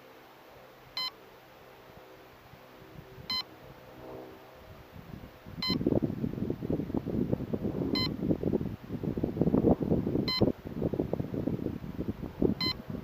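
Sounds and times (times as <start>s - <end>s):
short electronic beep: 12.6s - 12.8s.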